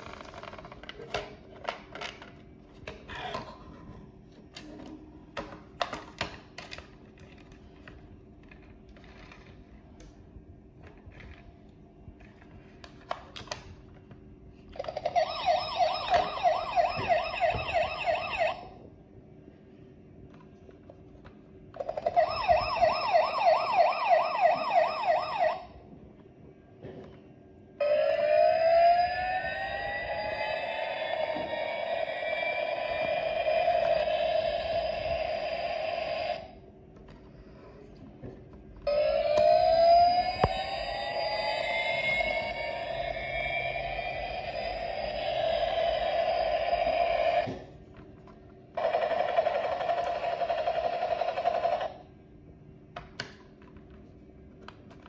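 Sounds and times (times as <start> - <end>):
toy electronic siren wailing: 14.8 - 18.8, 21.8 - 25.7, 27.8 - 36.5, 38.9 - 47.5
toy electronic sound effects: 38.9 - 47.5.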